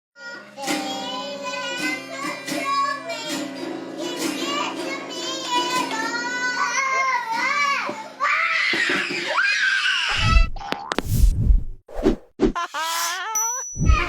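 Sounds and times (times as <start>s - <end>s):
high childlike singing voice: 0.2s - 8.7s, 13.8s - 14.0s.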